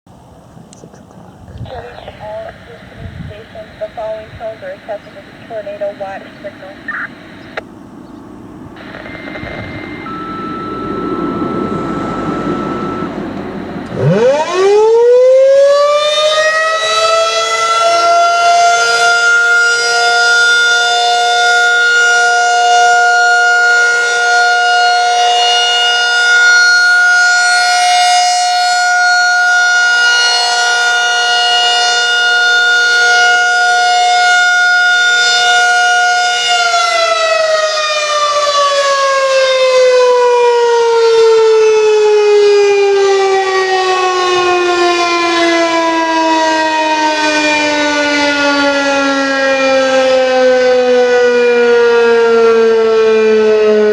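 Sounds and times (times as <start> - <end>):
radio alert tones: 1.6 - 14.8
warning siren winding: 8.8 - 53.8.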